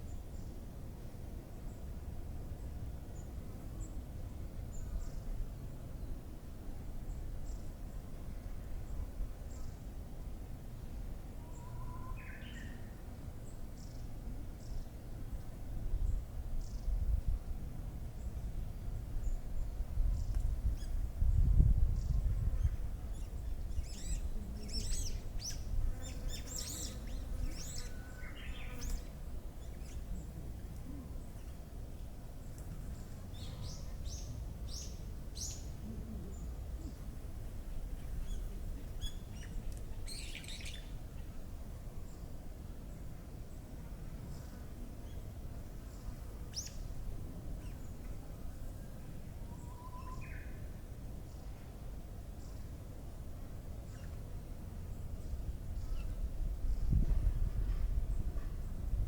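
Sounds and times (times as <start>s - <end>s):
wild birds whistling: 49.5s - 50.6s.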